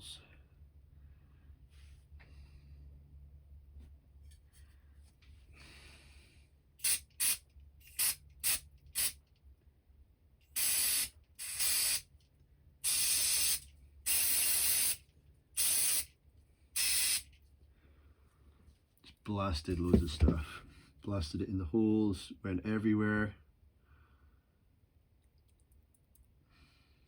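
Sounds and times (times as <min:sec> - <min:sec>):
aerosol spray hissing: 0:06.8 - 0:09.2, 0:10.6 - 0:12.1, 0:12.8 - 0:15.0, 0:15.6 - 0:16.1, 0:16.8 - 0:17.3.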